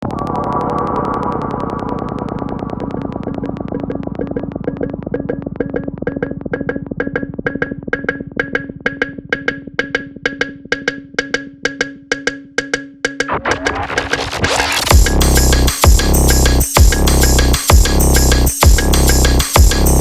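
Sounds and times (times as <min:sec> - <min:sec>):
noisy hazy texture: 0:00.0 - 0:04.1, 0:13.3 - 0:15.2
wood-block-like percussive ticking: 0:02.7 - 0:14.0.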